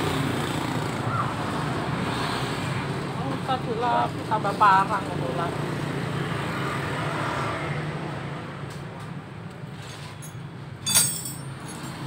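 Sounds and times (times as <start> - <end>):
low hum of traffic: 0.0 - 12.0
sharp ringing clank: 10.8 - 12.0.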